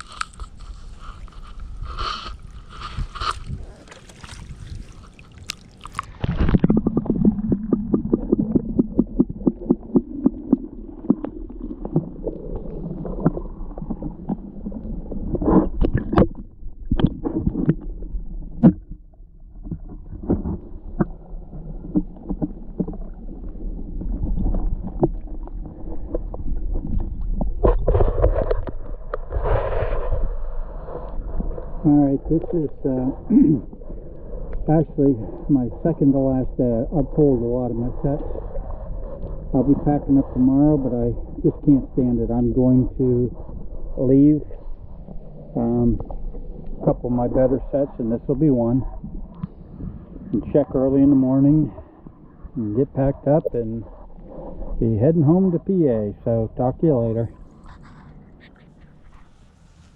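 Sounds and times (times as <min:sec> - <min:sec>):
water sloshing and splashing: 0:00.0 - 0:30.2.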